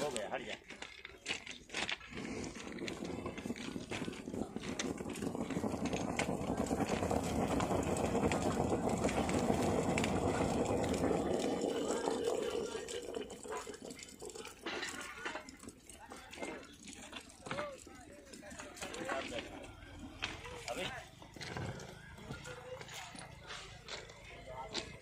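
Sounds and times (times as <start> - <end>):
thermite charge rushing: 2.2 - 13.5.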